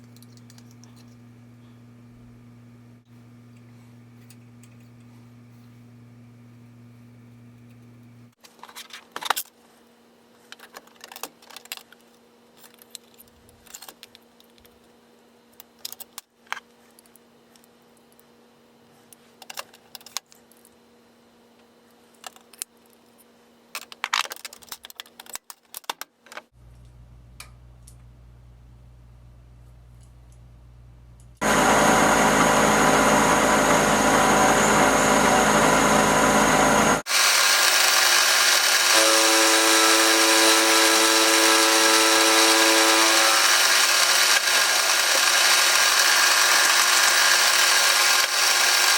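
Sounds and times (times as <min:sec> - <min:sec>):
machine motor hum: 0:30.7 - 0:48.9.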